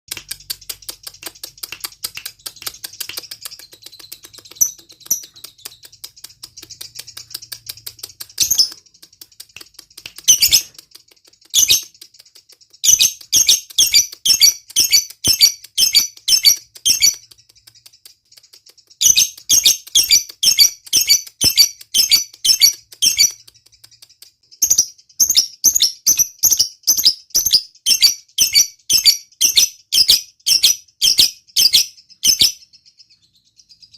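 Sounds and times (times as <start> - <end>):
lovebird rapid high chirps: 0.1 - 33.9
sharp bird calls: 0.2 - 33.9
faint fast ticking chatter: 0.3 - 12.8.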